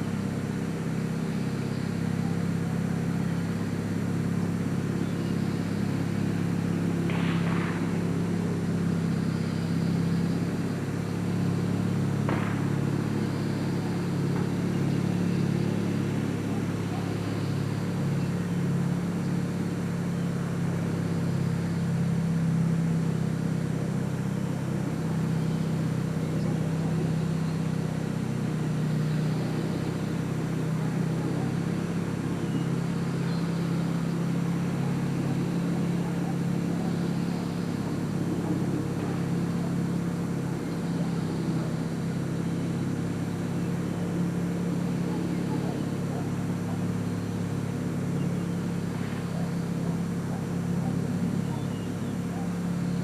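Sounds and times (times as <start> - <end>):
low mechanical drone: 0.0 - 53.0.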